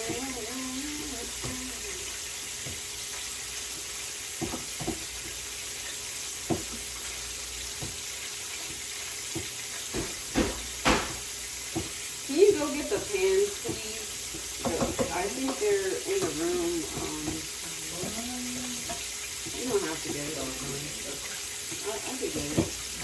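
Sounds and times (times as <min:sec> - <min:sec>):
chicken frying in hot oil: 0:00.0 - 0:23.0
kitchenware knocks and clinks: 0:09.4 - 0:11.9, 0:14.6 - 0:17.5.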